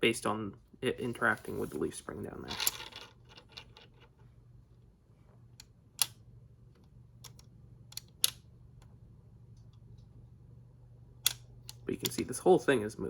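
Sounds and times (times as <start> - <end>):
small plastic clicks: 5.6 - 6.2, 6.8 - 8.9.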